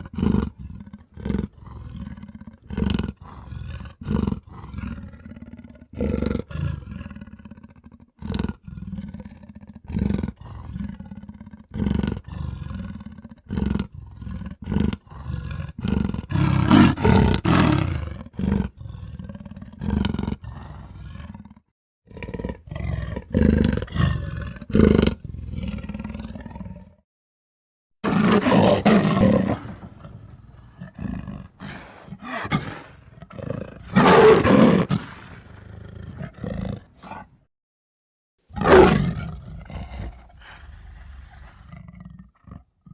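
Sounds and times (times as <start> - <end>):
creature roars: 13.5 - 27.0, 28.0 - 37.3, 38.6 - 42.6.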